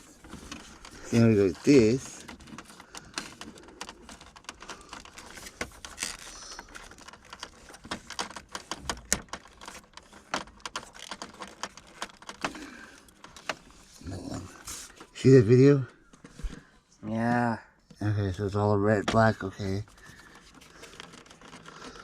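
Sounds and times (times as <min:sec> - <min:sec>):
wiring harness clicking and rattling: 0:00.0 - 0:16.6, 0:17.9 - 0:22.0.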